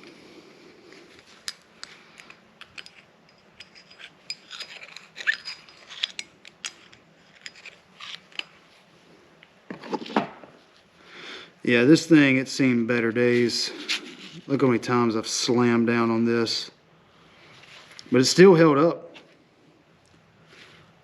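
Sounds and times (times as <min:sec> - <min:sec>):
metal pick clicking and scraping: 0:01.4 - 0:08.6.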